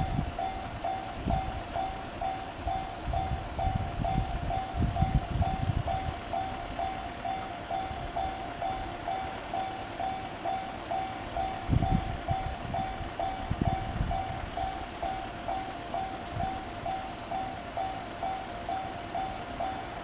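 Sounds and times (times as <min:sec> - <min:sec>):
level crossing alarm bell ringing: 0:00.0 - 0:20.0.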